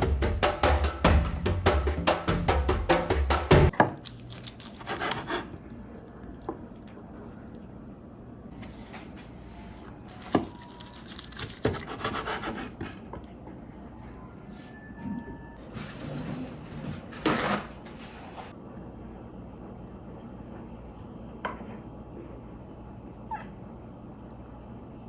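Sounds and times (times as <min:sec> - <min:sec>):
drum-led music: 0:00.0 - 0:03.7.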